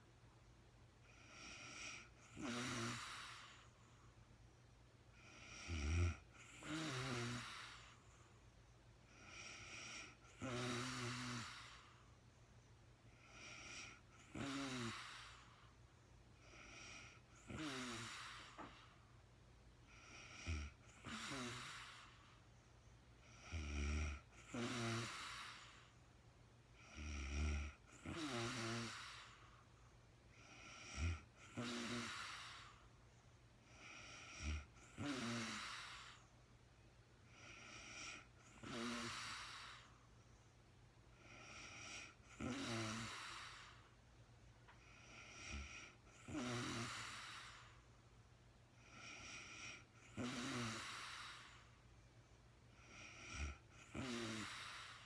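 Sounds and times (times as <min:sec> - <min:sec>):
woman snoring: 0:01.1 - 0:03.8, 0:05.2 - 0:08.0, 0:09.1 - 0:12.0, 0:13.1 - 0:15.7, 0:16.4 - 0:19.0, 0:19.9 - 0:22.4, 0:23.2 - 0:25.9, 0:26.8 - 0:29.6, 0:30.4 - 0:32.8, 0:33.6 - 0:36.2, 0:37.3 - 0:39.9, 0:41.2 - 0:43.9, 0:44.7 - 0:47.8, 0:48.8 - 0:51.8, 0:52.8 - 0:55.0.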